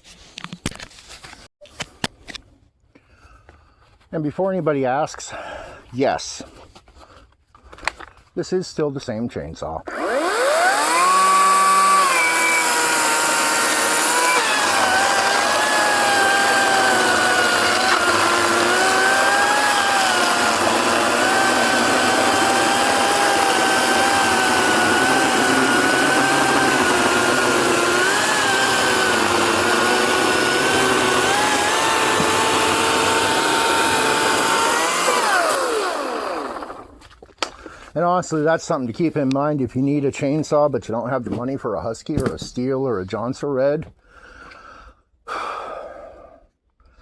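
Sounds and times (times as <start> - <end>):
electric chainsaw cutting wood: 9.9 - 37.0.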